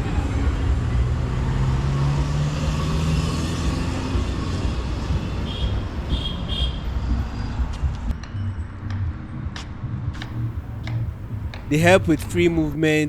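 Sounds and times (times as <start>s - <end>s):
traffic noise: 0.0s - 8.1s, 10.2s - 13.0s
car passing: 1.2s - 6.1s.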